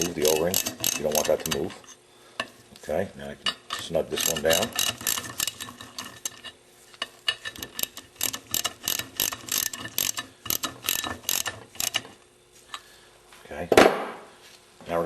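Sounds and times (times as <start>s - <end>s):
socket ratchet clicking: 0.0s - 1.7s, 3.7s - 6.1s, 7.3s - 12.1s.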